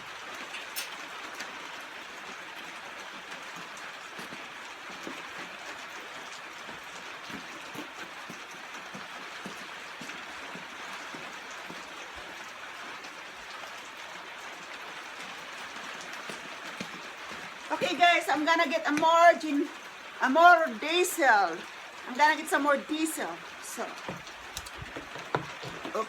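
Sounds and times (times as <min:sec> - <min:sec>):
heavy rain: 0:00.0 - 0:26.0.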